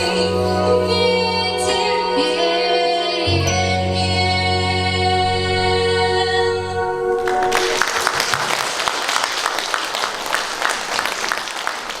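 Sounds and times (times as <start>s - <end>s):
song with backing music: 0.0s - 7.9s
audience applauding: 7.2s - 12.0s.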